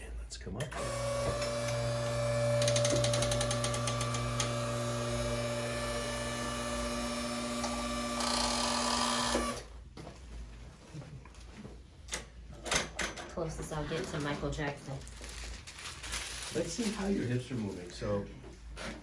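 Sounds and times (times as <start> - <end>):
electric motor humming: 0.8 - 9.6.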